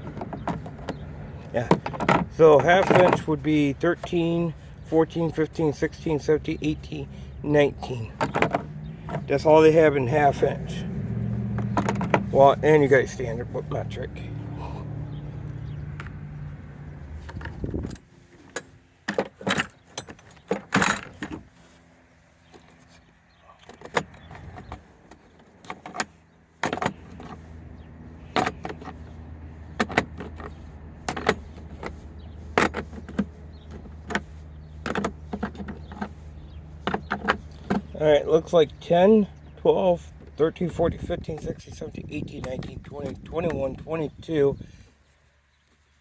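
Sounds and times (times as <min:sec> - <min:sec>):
steel sockets clinking: 0:01.7 - 0:04.1.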